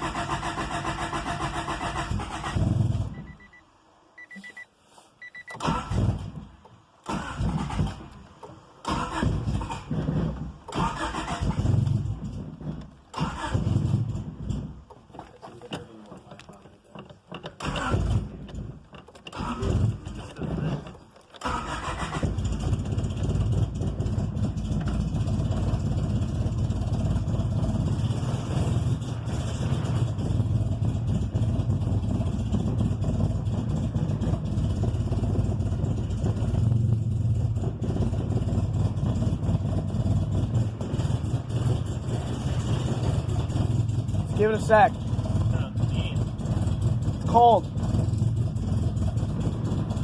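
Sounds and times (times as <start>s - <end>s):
car engine running rough: 0.0s - 3.5s, 5.5s - 50.0s
car engine cranking and starting: 0.0s - 4.6s, 5.2s - 50.0s.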